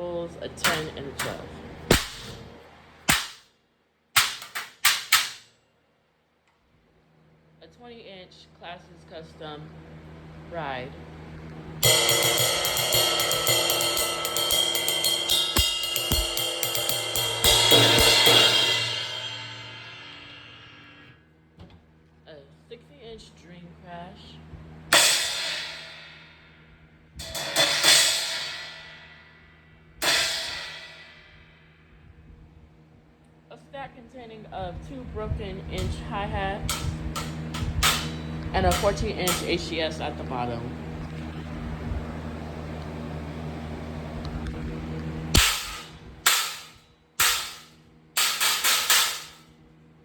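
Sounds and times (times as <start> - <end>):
steady low hum: 0.0 - 50.0
crash cymbal ringing: 11.8 - 21.1, 24.9 - 31.7, 45.3 - 49.5.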